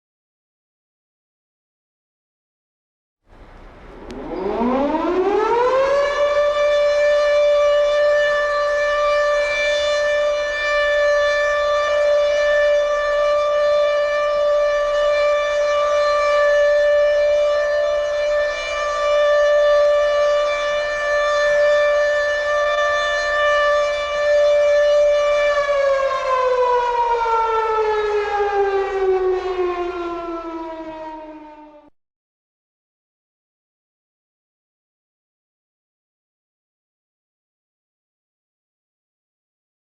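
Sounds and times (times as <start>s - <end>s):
air-raid siren: 3.3s - 32.0s.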